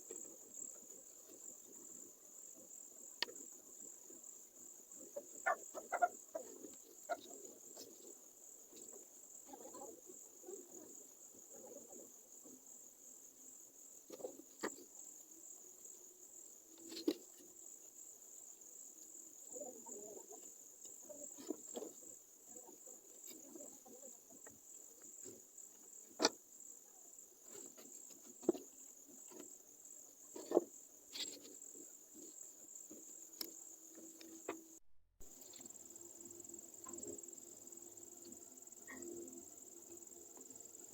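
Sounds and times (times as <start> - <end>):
crickets chirring: 0.0 - 40.9.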